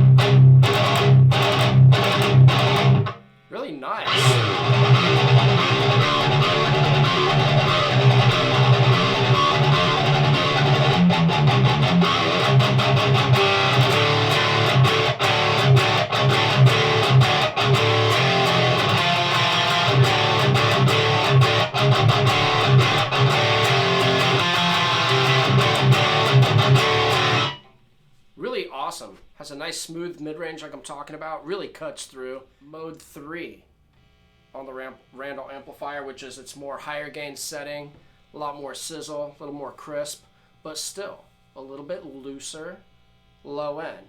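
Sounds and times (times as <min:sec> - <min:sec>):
distorted electric guitar riffing: 0:00.0 - 0:27.7.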